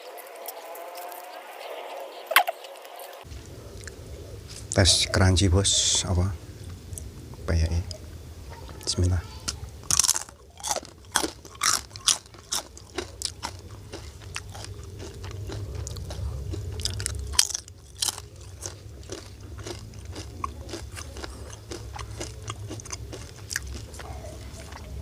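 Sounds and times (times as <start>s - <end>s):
steady low hum: 0.0s - 25.0s
person chewing crunchy food: 2.3s - 4.8s, 8.9s - 25.0s.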